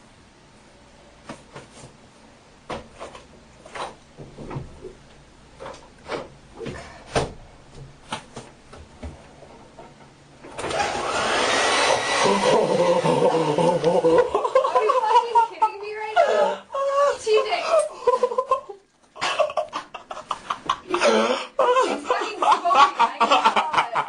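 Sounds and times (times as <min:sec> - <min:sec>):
hair dryer running: 0:10.6 - 0:14.3.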